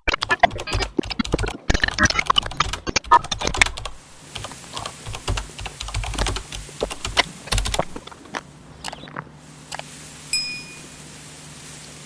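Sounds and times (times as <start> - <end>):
crunchy eating: 0.1 - 12.0
soft thuds of chewing: 4.2 - 10.0.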